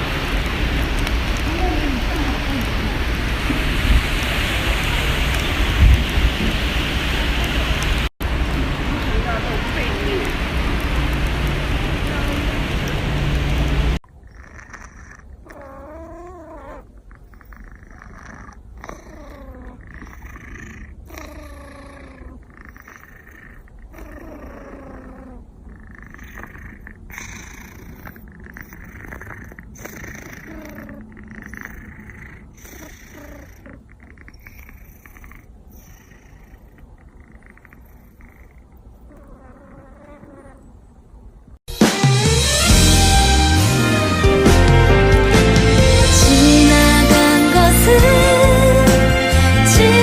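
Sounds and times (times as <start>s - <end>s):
cat purring: 0.0s - 3.2s, 8.6s - 41.0s, 45.8s - 50.0s.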